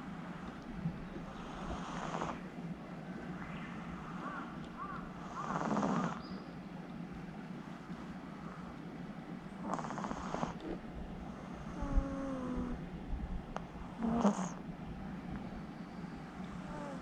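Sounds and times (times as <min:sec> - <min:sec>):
cat snoring: 0:01.3 - 0:02.4, 0:05.2 - 0:06.2, 0:09.6 - 0:12.8, 0:13.6 - 0:14.6, 0:16.5 - 0:17.0.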